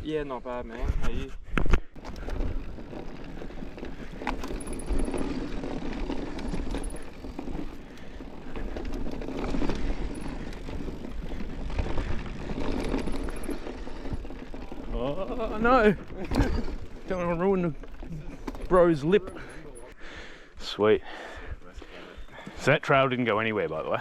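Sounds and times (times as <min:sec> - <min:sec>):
tyre and wind rush: 0:00.8 - 0:19.8
bike rattling and knocking: 0:01.8 - 0:20.1.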